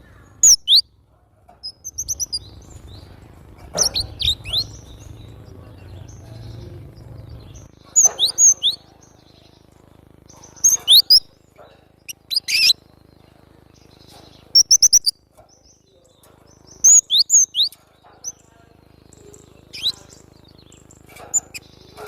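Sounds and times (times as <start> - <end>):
bird whistling song: 0.4 - 0.9, 1.6 - 2.9, 3.8 - 5.4, 7.6 - 9.6, 10.3 - 11.3, 12.1 - 12.8, 14.2 - 15.2, 16.7 - 18.4, 19.5 - 22.0.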